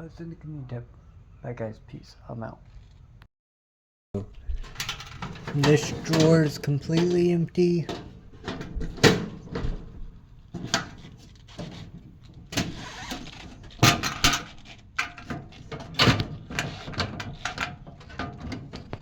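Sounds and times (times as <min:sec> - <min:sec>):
drawers knocking shut: 0:04.6 - 0:07.3, 0:07.9 - 0:11.0
metal drawers sliding on runners: 0:04.8 - 0:07.3.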